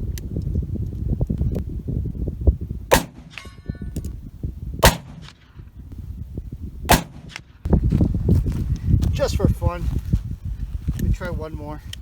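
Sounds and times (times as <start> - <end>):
handgun shots: 2.9 - 3.6, 4.8 - 5.4, 6.9 - 7.5.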